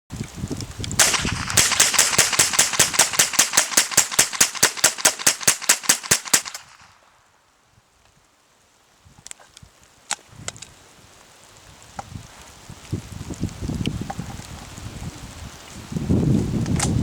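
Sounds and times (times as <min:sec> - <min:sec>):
rapid rifle shots: 0:01.0 - 0:07.0.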